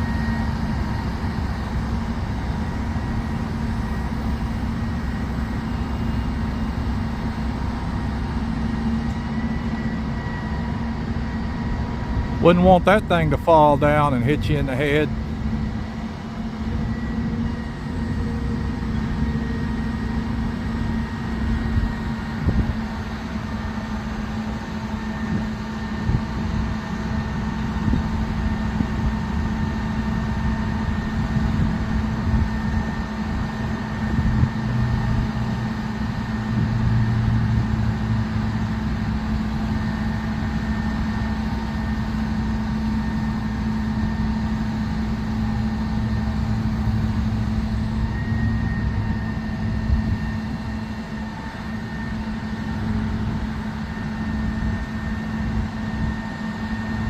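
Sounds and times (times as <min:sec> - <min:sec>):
diesel engine running under load: 0:00.0 - 0:57.0.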